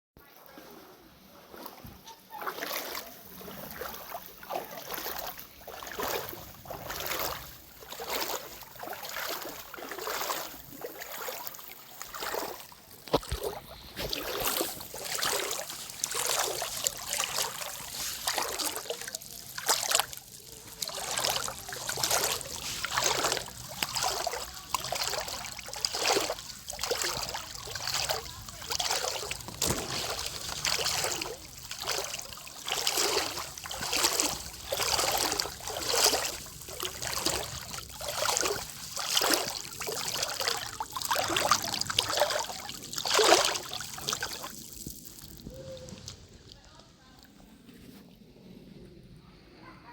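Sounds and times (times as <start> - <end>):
footsteps wading through water: 0.2 - 48.1.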